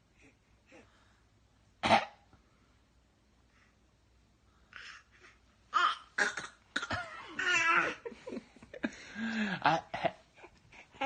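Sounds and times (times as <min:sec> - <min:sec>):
baby coughing: 0:01.8 - 0:02.2, 0:05.8 - 0:08.0
baby babbling: 0:04.7 - 0:06.1.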